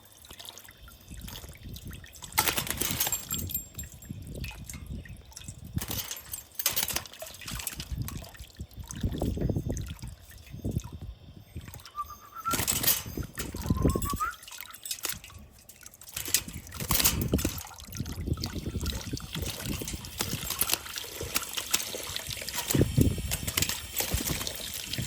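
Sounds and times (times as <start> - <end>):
parrot splashing in water: 11.6 - 25.0.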